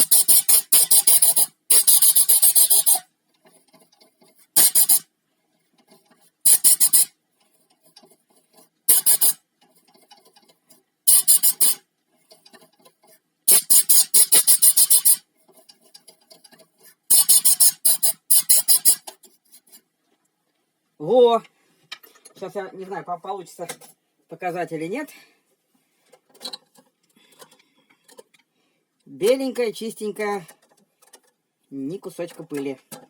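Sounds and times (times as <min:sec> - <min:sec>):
compressed air blasts hissing: 0:00.0 - 0:03.0, 0:04.6 - 0:05.1, 0:06.4 - 0:07.1, 0:08.9 - 0:09.4, 0:11.1 - 0:11.8, 0:13.5 - 0:15.2, 0:17.1 - 0:19.0.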